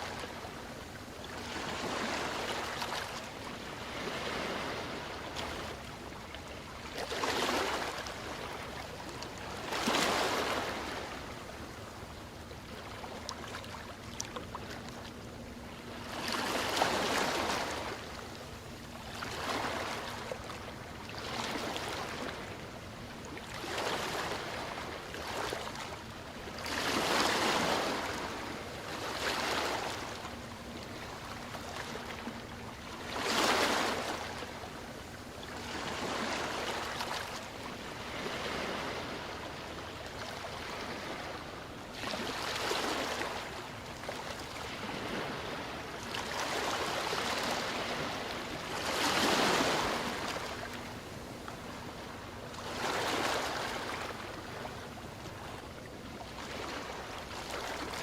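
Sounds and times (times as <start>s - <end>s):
ocean waves breaking: 0.0s - 11.9s, 12.6s - 55.6s, 56.2s - 58.0s.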